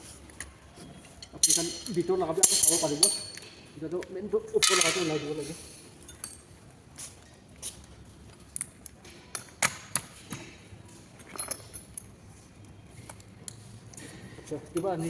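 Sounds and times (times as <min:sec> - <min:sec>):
metal parts clinking and knocking: 0:01.2 - 0:03.5, 0:04.6 - 0:05.5, 0:11.2 - 0:12.1.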